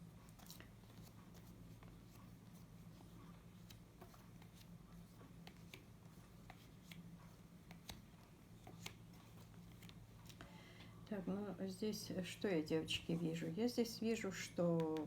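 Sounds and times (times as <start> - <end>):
low electrical hum: 0.0 - 15.0
playing cards clicking on table: 8.6 - 9.0.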